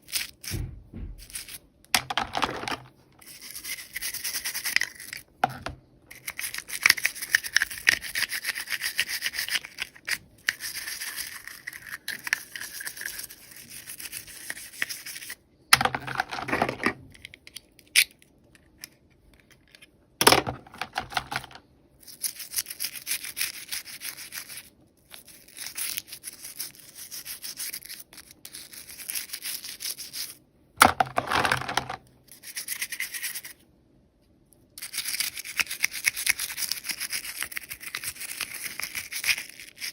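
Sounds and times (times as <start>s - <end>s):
handling noises: 0.5s - 3.0s, 15.7s - 17.1s, 20.2s - 21.6s, 30.8s - 32.0s.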